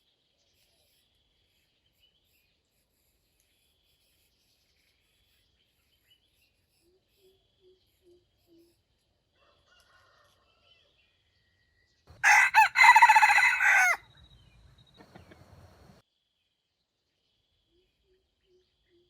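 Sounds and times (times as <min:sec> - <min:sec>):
rooster crowing: 0:12.2 - 0:14.1.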